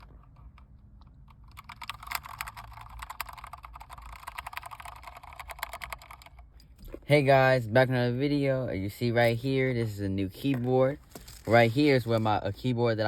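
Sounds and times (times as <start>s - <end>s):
rapid typing on keyboard: 1.3s - 6.5s.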